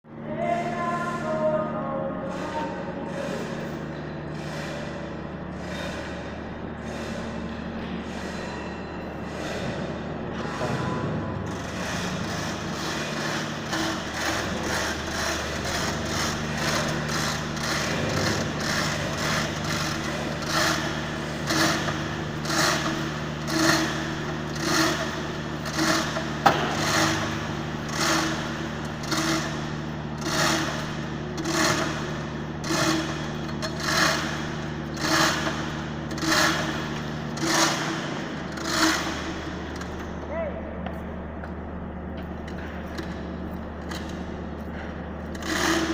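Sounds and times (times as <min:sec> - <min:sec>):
machine hum: 0:00.0 - 0:45.9
regular mechanical knocking: 0:02.3 - 0:45.9.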